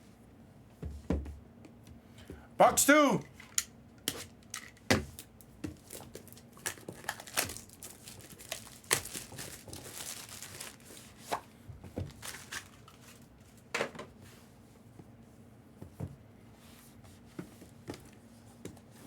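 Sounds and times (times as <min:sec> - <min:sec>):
packaging tearing and crinkling: 0:05.8 - 0:11.0, 0:12.1 - 0:13.2.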